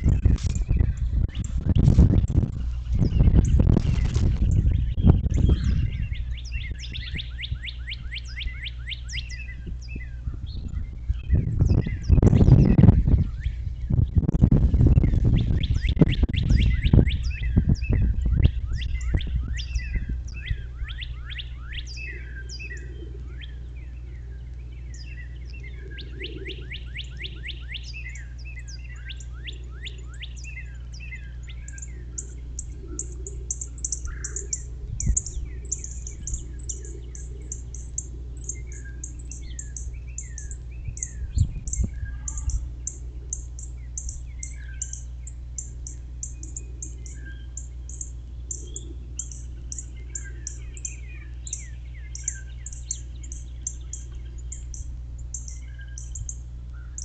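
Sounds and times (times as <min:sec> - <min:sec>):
low rumbling thumps: 0:00.0 - 0:08.1, 0:09.5 - 0:21.2, 0:31.6 - 0:46.2
songbirds singing: 0:00.0 - 0:57.0
steady low hum: 0:00.0 - 0:57.0
high-pitched bird chirps: 0:04.3 - 0:14.2, 0:15.0 - 0:23.6, 0:24.8 - 0:57.0.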